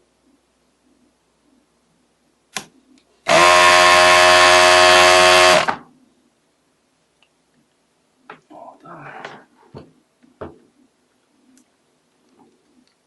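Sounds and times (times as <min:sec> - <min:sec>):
vacuum pump buzzing: 0:03.3 - 0:05.8.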